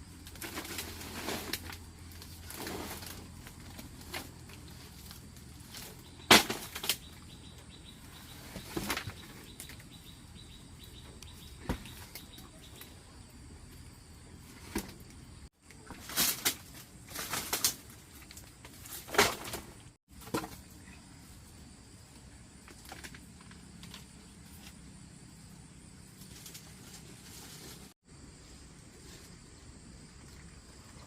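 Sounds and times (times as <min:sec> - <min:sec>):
rustling scrapes: 0:00.2 - 0:06.2, 0:26.2 - 0:28.0.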